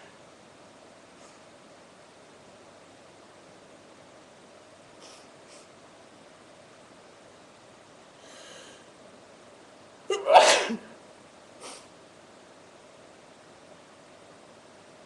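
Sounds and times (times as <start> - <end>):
woman sneezing: 10.1 - 10.9.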